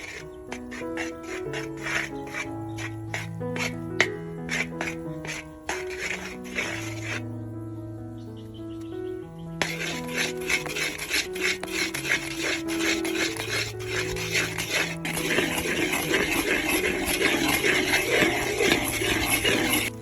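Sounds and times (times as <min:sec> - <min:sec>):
rhythmic rasping strokes: 0:00.0 - 0:07.3, 0:09.6 - 0:20.0
soft background music: 0:00.0 - 0:20.0.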